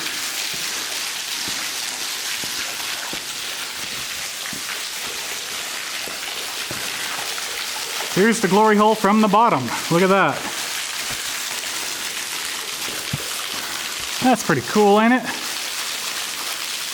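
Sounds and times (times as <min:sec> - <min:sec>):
water drips pattering: 0:00.0 - 0:16.9
waterfall rushing: 0:06.7 - 0:11.4, 0:12.9 - 0:15.6.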